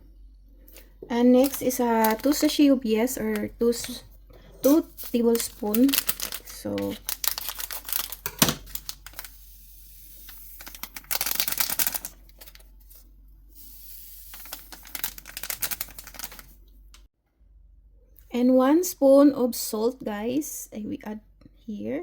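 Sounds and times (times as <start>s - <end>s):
sachets crackling and rustling: 1.2s - 13.0s, 13.6s - 16.7s.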